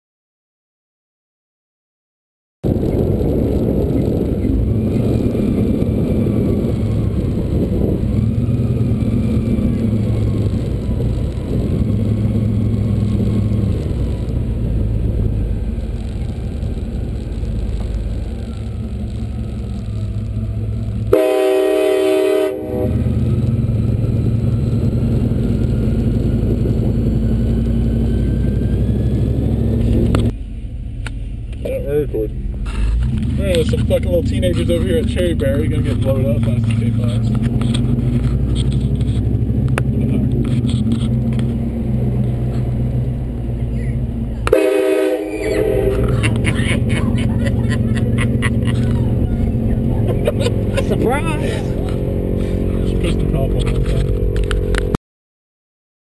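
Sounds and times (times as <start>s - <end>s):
vehicle driving rumble: 2.6s - 55.0s
train horn blast: 21.1s - 23.1s, 44.4s - 46.4s.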